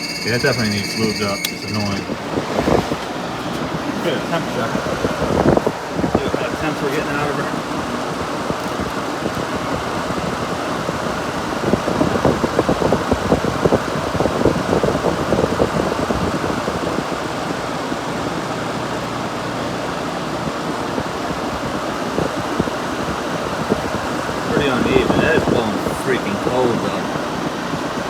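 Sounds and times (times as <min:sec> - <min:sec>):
air gusting against microphone: 0:00.0 - 0:28.0
window air conditioner running: 0:00.0 - 0:28.0.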